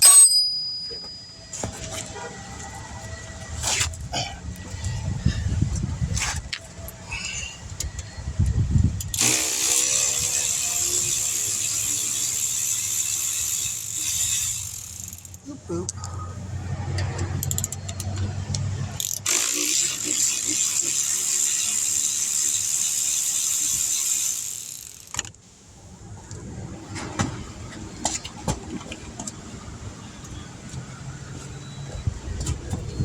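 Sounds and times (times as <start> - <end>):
hand tools clinking on metal: 0.0 - 2.0.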